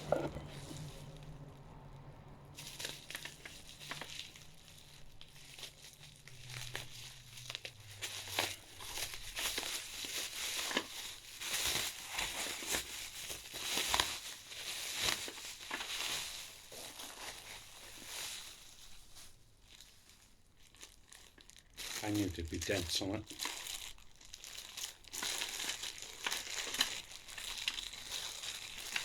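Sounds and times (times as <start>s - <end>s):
packaging crinkling: 2.6s - 29.0s.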